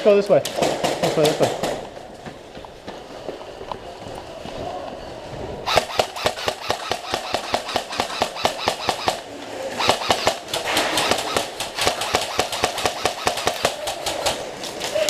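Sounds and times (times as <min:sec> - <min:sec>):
airsoft guns firing bursts: 0:05.7 - 0:15.0.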